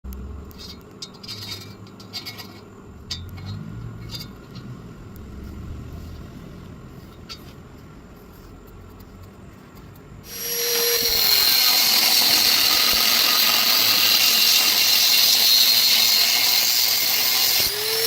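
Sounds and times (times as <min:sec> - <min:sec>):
steady low hum: 0:00.0 - 0:11.2
metal pieces clinking and scraping: 0:00.5 - 0:04.7.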